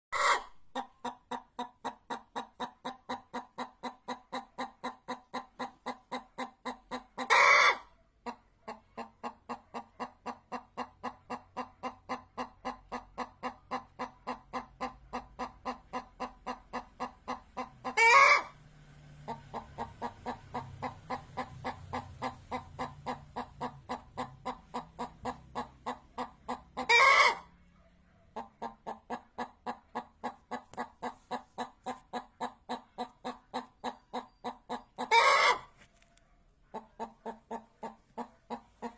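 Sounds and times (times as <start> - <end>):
loud hen call: 0.1 - 0.6, 7.2 - 7.9, 17.8 - 18.6, 26.8 - 27.5, 35.0 - 35.7
hens clucking: 0.1 - 38.9.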